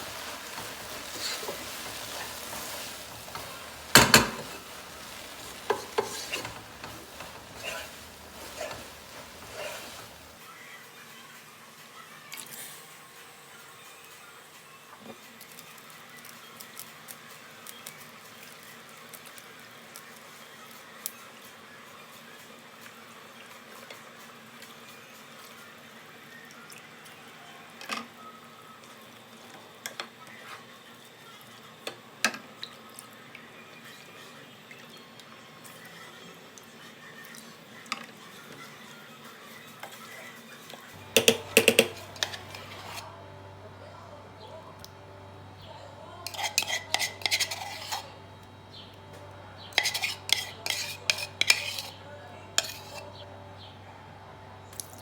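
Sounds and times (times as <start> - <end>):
utensils clicking and tapping: 0.0 - 10.3, 41.0 - 43.1
watery hiss: 0.0 - 10.4.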